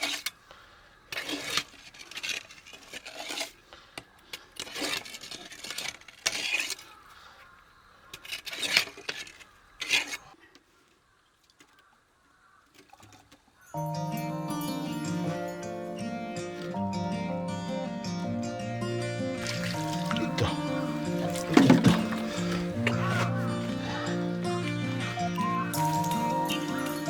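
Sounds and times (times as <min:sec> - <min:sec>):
tools scraping and clinking: 0:01.1 - 0:06.8, 0:19.4 - 0:27.0.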